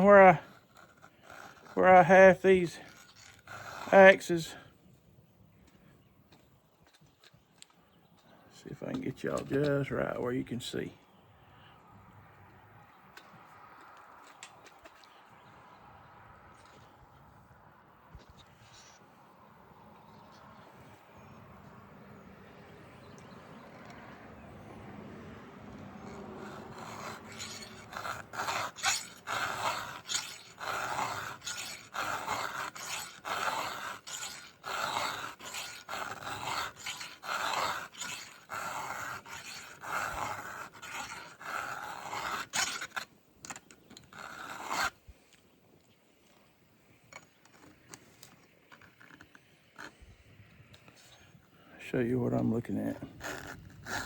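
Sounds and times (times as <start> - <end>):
file rasping on chainsaw chain: 0.0 - 4.7, 23.2 - 45.0, 52.3 - 54.0.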